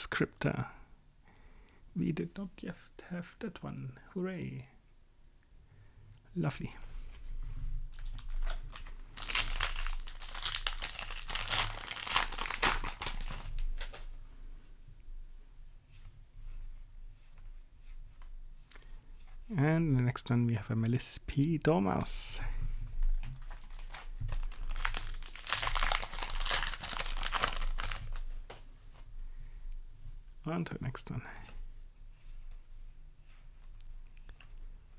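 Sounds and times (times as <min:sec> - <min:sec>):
foil wrapper crinkling and tearing: 0:07.9 - 0:14.1, 0:23.0 - 0:28.6.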